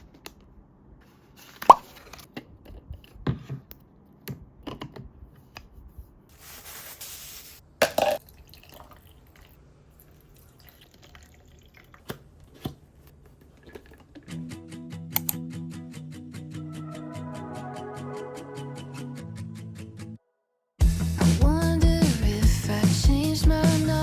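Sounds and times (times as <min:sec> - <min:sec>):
water drips and plops: 0:08.1 - 0:12.2.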